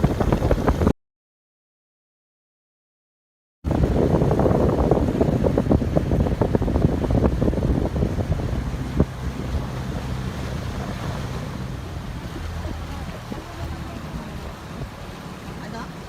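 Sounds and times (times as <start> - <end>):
boat moving across water: 0.0 - 0.9, 3.7 - 16.0
wind buffeting microphone: 0.0 - 0.9, 3.7 - 16.0
water splashing: 3.7 - 16.0.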